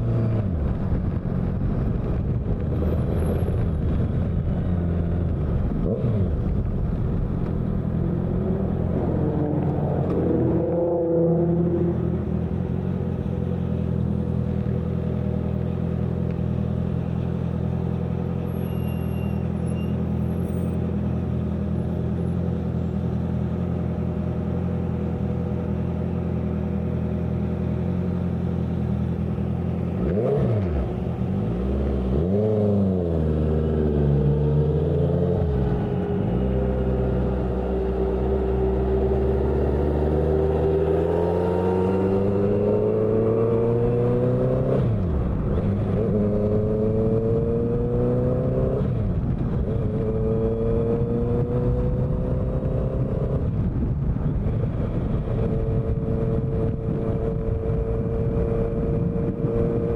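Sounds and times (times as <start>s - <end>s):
motorcycle engine revving: 23.4s - 53.7s.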